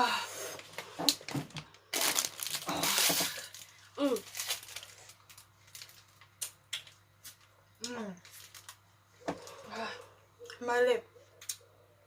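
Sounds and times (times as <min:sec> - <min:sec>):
crinkly rustling: 0:01.2 - 0:06.3, 0:08.2 - 0:08.8.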